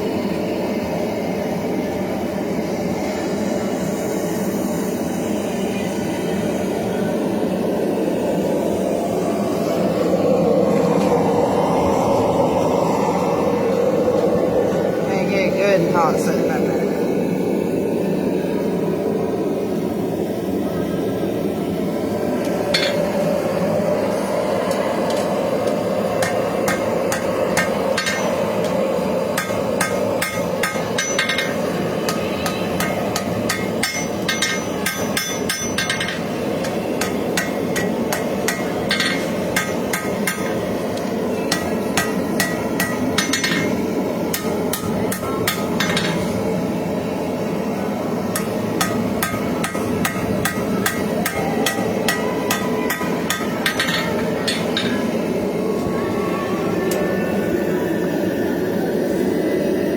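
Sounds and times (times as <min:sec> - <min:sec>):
gas forge roar: 0:00.0 - 0:59.9
hammer ringing on steel: 0:22.8 - 0:23.2, 0:26.2 - 0:40.8, 0:41.5 - 0:46.3, 0:48.4 - 0:55.2.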